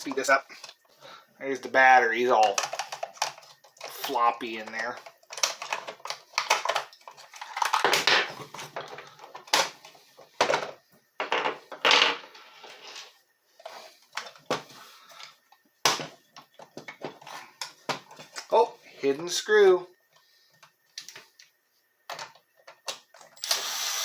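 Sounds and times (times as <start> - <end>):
plastic tool housing rattling: 2.4 - 4.1, 4.7 - 8.1.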